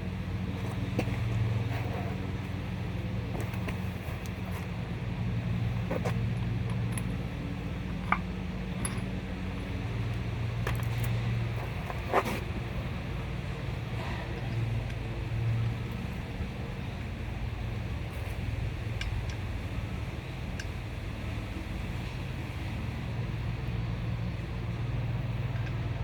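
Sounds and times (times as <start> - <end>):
low engine hum: 0.0 - 26.0
metallic clinks and knocks: 7.9 - 9.2.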